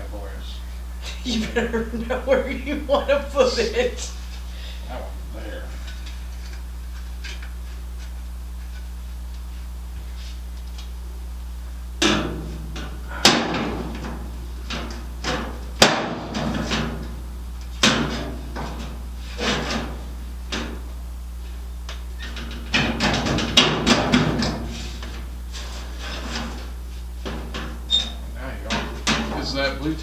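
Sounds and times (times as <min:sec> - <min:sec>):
steady low hum: 0:00.0 - 0:30.0
metal clanks and knocks: 0:27.3 - 0:29.5.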